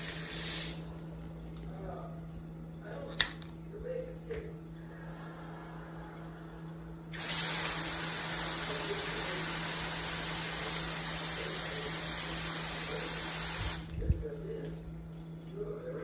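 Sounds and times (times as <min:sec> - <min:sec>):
shower head spraying water: 0:00.0 - 0:00.9, 0:07.1 - 0:14.1.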